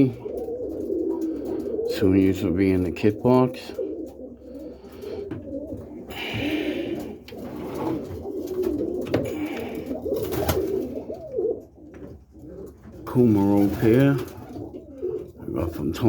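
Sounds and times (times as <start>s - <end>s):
pigeons cooing: 0.0s - 16.0s.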